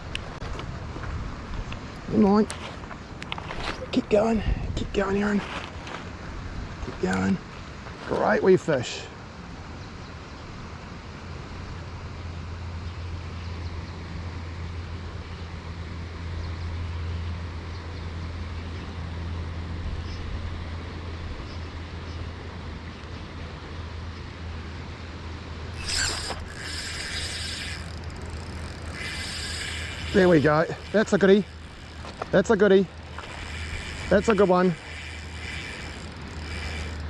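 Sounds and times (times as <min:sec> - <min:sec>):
river rumble: 0:20.4 - 0:37.0
fishing reel drag buzzing: 0:25.7 - 0:37.0.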